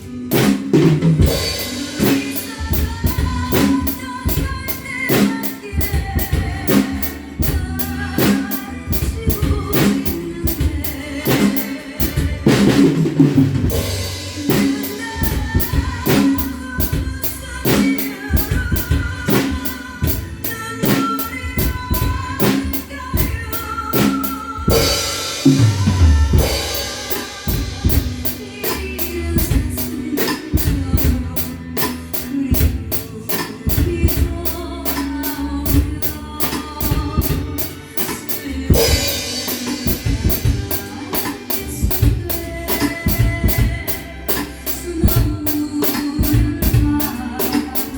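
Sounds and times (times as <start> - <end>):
backing track music: 0.0 - 47.9
drum kit playing a beat: 0.0 - 47.9.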